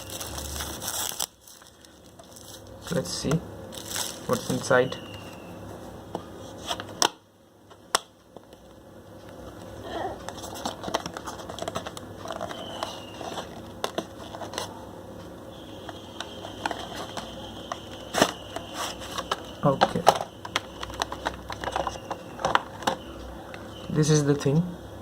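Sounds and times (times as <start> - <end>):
package being opened by hand: 0.0 - 3.0, 3.7 - 5.4, 10.2 - 14.7, 16.5 - 23.0
cardboard and plastic rustling: 0.0 - 7.0, 9.5 - 14.8, 16.4 - 23.2.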